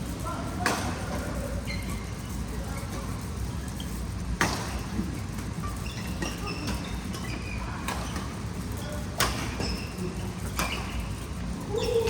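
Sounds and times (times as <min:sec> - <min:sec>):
shoes squeaking on floor: 0:01.6 - 0:02.9, 0:03.5 - 0:12.0
racket hitting shuttlecock: 0:04.4 - 0:04.8, 0:06.2 - 0:08.4, 0:09.2 - 0:09.8.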